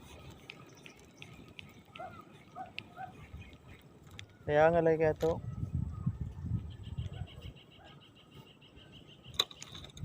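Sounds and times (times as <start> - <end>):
faint bird calls: 0.0 - 4.7, 5.4 - 9.8.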